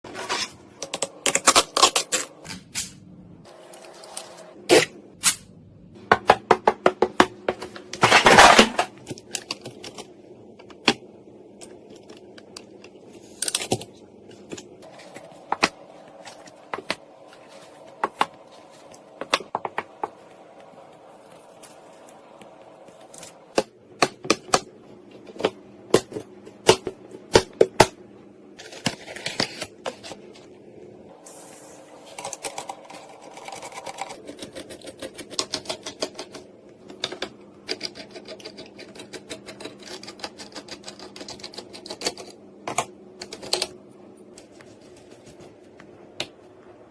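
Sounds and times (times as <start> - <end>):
computer parts clicking and knocking: 6.0 - 11.1, 32.2 - 43.8.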